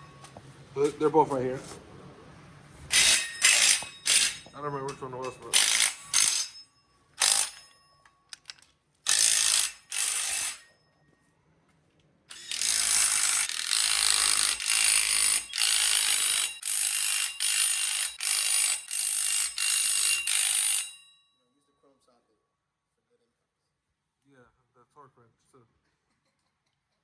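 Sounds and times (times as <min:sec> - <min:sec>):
ratchet wrench clicking: 0:05.6 - 0:06.6, 0:07.2 - 0:07.7, 0:08.3 - 0:10.6.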